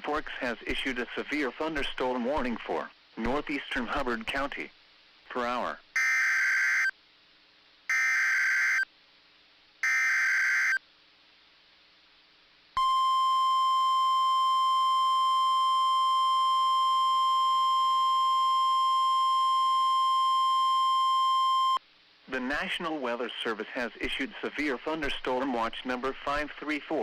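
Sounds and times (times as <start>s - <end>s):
steady warning alarm tone: 6.0s - 6.9s, 7.9s - 8.9s, 9.8s - 10.8s.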